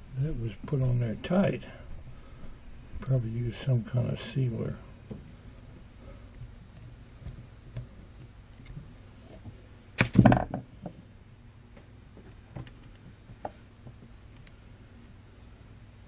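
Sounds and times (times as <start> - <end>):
parts clattering on workbench: 10.0 - 10.6.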